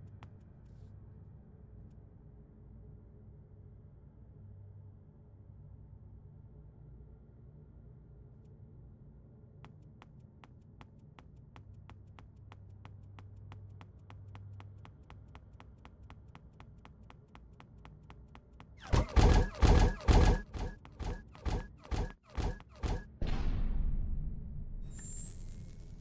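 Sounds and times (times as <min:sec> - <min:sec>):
loud heavy thuds: 0:18.8 - 0:23.5.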